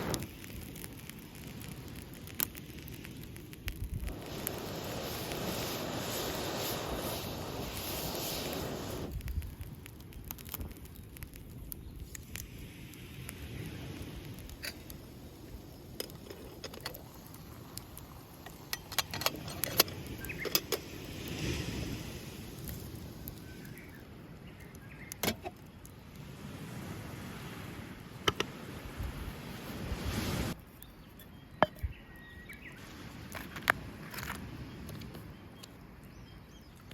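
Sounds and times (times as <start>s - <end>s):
sharp clicks and clinks: 18.4s - 20.8s
surf washing: 26.2s - 30.6s.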